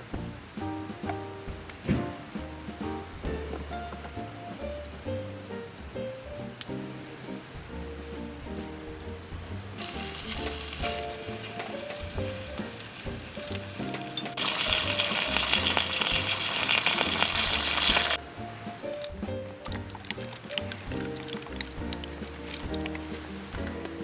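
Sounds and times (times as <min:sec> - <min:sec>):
background music: 0:00.0 - 0:24.0
food sizzling in a pan: 0:09.8 - 0:18.2.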